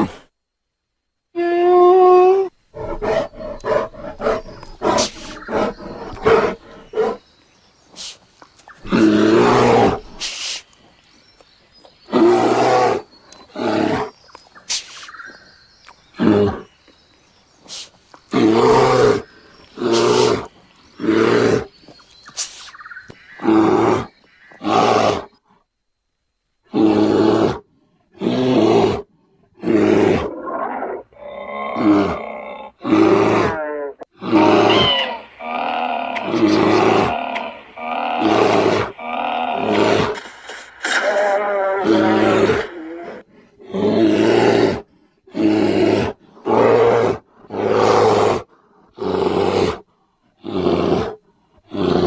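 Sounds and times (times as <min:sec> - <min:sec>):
bear moaning: 0:01.4 - 0:07.2, 0:08.0 - 0:10.4, 0:17.7 - 0:21.8, 0:29.6 - 0:49.8
bear growling roars: 0:02.8 - 0:07.2, 0:08.8 - 0:10.4, 0:12.1 - 0:14.2, 0:17.7 - 0:21.8, 0:26.7 - 0:52.0
bear grunting: 0:02.8 - 0:07.2, 0:08.0 - 0:10.7, 0:12.0 - 0:14.3, 0:17.7 - 0:25.3, 0:28.2 - 0:49.8, 0:50.4 - 0:52.0.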